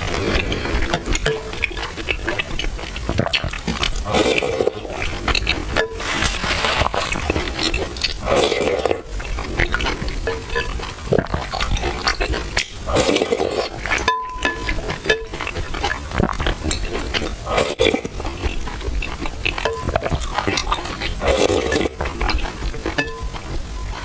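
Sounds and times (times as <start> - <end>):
wet mouth eating sounds: 0.0 - 24.0
spoon clinking in a bowl: 14.0 - 15.5, 22.9 - 23.4.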